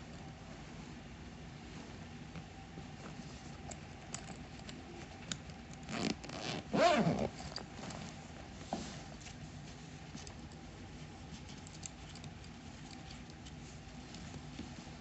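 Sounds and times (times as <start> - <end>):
bag clicks and rustles: 5.7 - 15.0
backpack zipper: 5.8 - 7.6.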